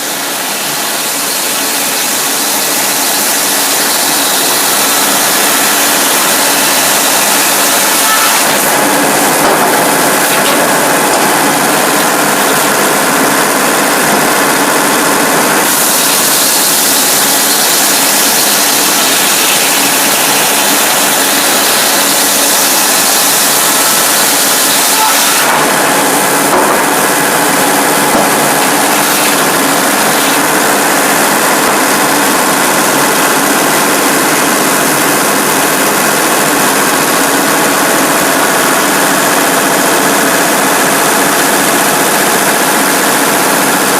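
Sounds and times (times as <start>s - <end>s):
diesel engine running: 8.6s - 15.9s, 25.5s - 43.9s.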